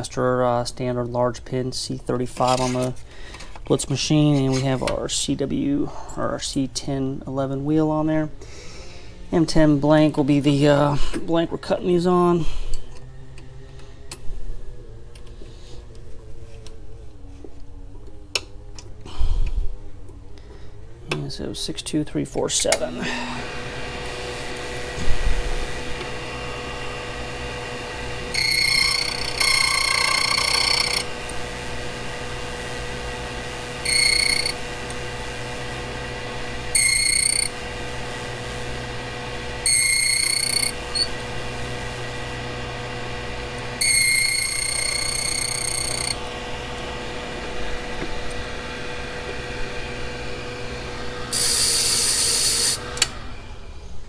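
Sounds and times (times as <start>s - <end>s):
background hum: 0.0s - 54.0s
key cutting machine grating metal: 28.1s - 31.3s, 33.5s - 35.2s, 36.7s - 37.8s, 39.6s - 41.2s, 43.8s - 46.2s, 51.3s - 52.8s.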